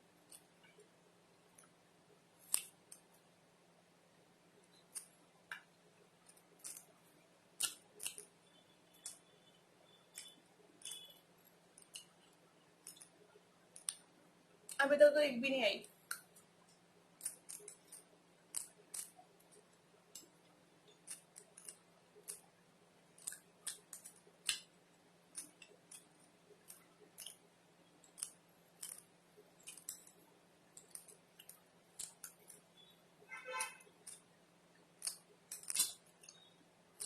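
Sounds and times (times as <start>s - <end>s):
chewing clicks: 6.3s - 6.9s, 7.6s - 8.3s, 11.8s - 13.2s, 16.1s - 20.3s, 20.9s - 22.5s, 23.2s - 24.7s, 25.3s - 27.4s, 28.0s - 30.2s, 30.8s - 32.9s, 35.0s - 37.0s.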